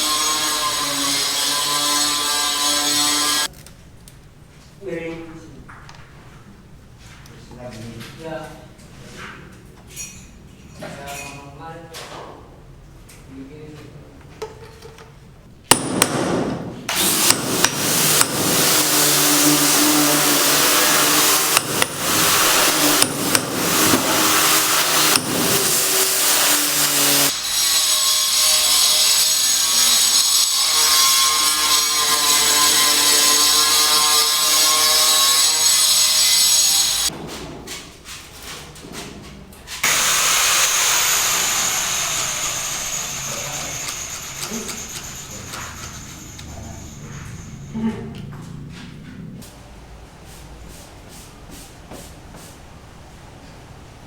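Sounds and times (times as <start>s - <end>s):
power tool running: 16.9s - 37.1s, 39.8s - 47.7s.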